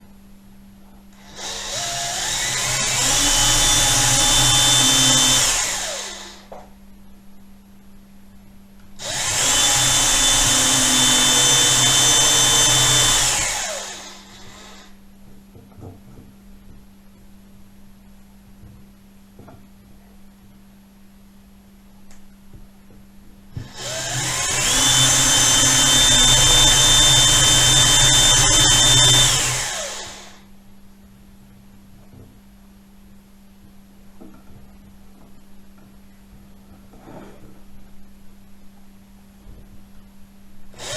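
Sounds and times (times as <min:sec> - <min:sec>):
electric drill motor whining: 0:01.2 - 0:06.5, 0:09.0 - 0:15.0, 0:23.6 - 0:30.4.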